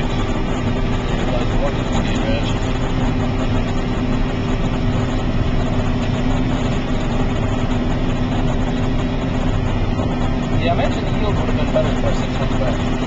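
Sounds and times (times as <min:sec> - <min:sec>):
combine harvester drone: 0:00.0 - 0:13.0.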